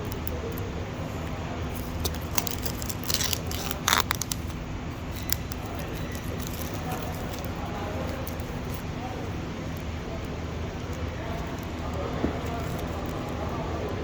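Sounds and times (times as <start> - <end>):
steady low hum: 0.0 - 14.0
packaging crinkling and clicking: 1.2 - 8.9, 10.8 - 13.6.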